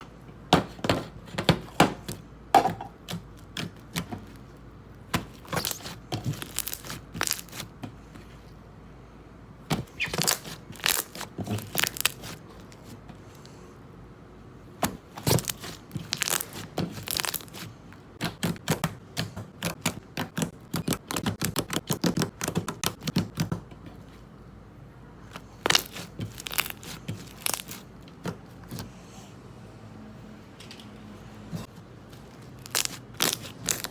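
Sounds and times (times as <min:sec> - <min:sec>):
slime crackling and popping: 0:05.2 - 0:07.7, 0:10.0 - 0:12.8, 0:15.2 - 0:17.7, 0:25.6 - 0:27.9, 0:32.3 - 0:33.9.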